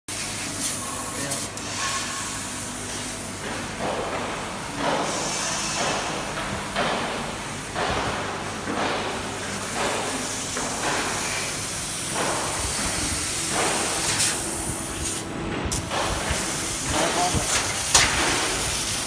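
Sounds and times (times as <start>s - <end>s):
laser cutting machine hum: 4.4s - 19.0s
hiss of assist gas: 4.8s - 6.1s, 9.6s - 19.0s.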